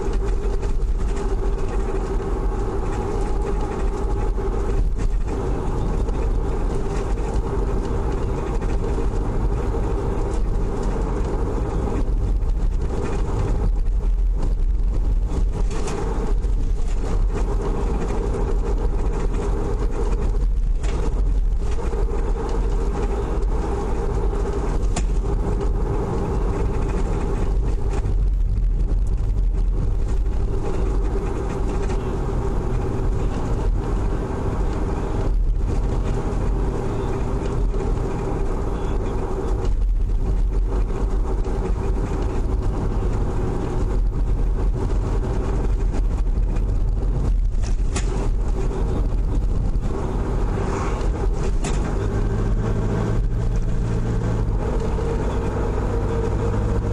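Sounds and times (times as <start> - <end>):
car engine and tyre noise: 0.0 - 56.9.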